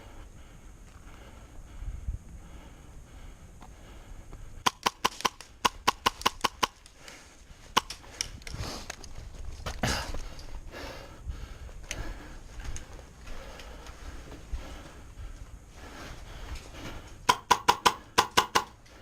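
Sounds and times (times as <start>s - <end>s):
airsoft gun shots: 4.6s - 6.8s, 17.3s - 18.8s
rustling noise: 6.9s - 10.6s.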